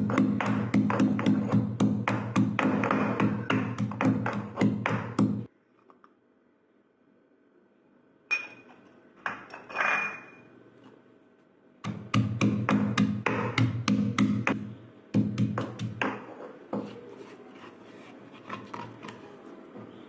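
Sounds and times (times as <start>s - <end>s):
rhythmic background music: 0.0s - 5.5s.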